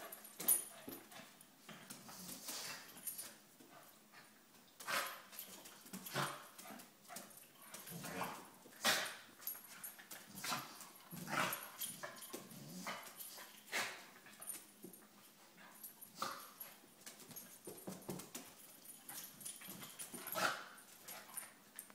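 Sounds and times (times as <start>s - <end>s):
dogs sneezing: 8.2s - 9.2s.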